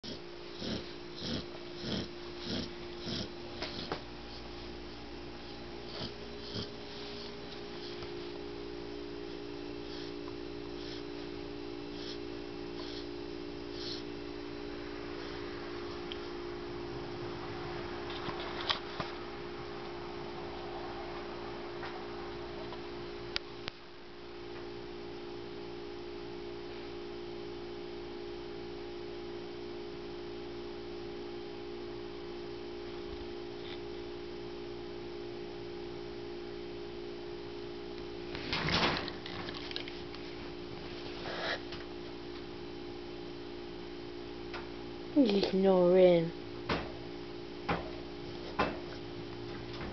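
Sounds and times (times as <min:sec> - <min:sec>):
puppy snoring: 0:00.0 - 0:08.4, 0:09.2 - 0:14.2, 0:41.1 - 0:41.8
low electrical hum: 0:00.0 - 0:49.9.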